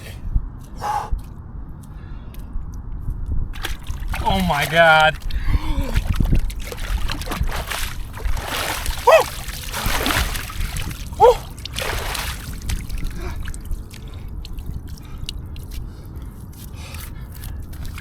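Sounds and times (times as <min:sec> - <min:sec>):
water dripping: 0:03.6 - 0:16.3, 0:16.9 - 0:18.0
icy water splashing: 0:03.6 - 0:18.0
person yelping: 0:09.0 - 0:09.4, 0:11.2 - 0:11.6.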